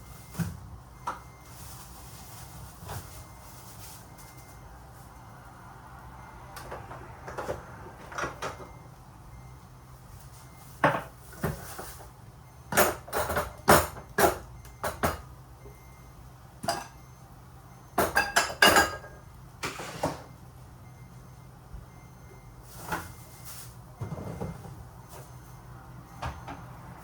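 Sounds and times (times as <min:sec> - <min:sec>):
dishes and cutlery clinking: 0:18.0 - 0:19.2.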